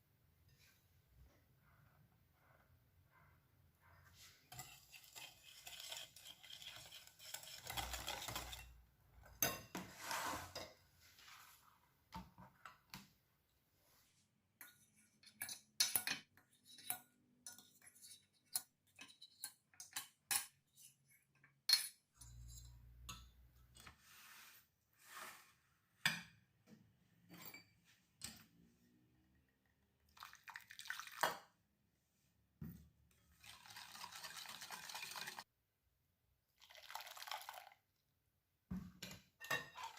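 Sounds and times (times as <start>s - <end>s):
scraping or stirring in bowl: 3.2s - 11.5s, 16.4s - 21.2s, 22.2s - 25.6s, 33.3s - 35.5s
utensils clinking against bowls: 4.5s - 8.8s.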